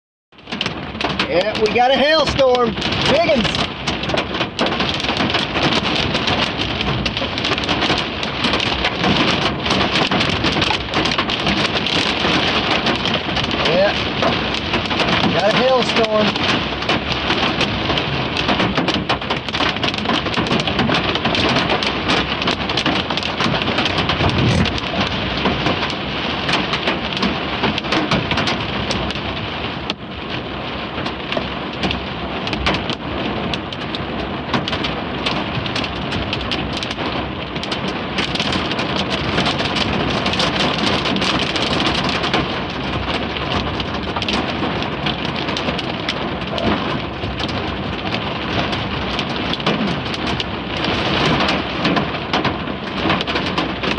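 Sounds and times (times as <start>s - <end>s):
hailstones clattering: 0.5s - 53.9s
heavy rain hissing: 13.4s - 16.5s, 23.6s - 25.4s.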